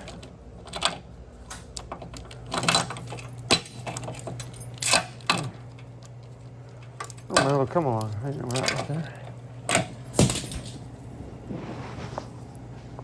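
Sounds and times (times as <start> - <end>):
metallic clinks and knocks: 0.0 - 7.8
electric fuel pump humming: 0.0 - 11.5.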